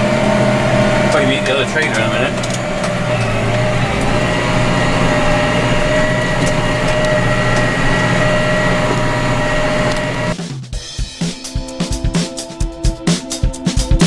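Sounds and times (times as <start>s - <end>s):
steady whine: 0.0s - 10.4s
tractor engine running: 0.0s - 10.4s.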